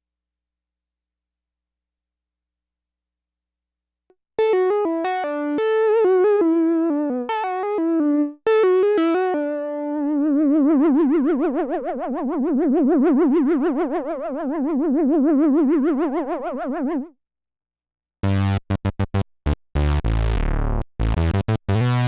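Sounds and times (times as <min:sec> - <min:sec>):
synthesizer notes: 0:04.4 - 0:17.0.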